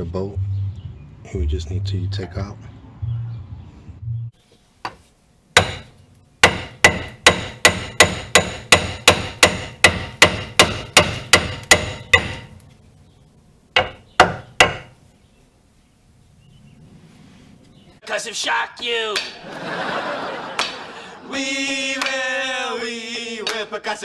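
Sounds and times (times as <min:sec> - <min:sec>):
hammer striking metal hub: 0:05.6 - 0:12.5.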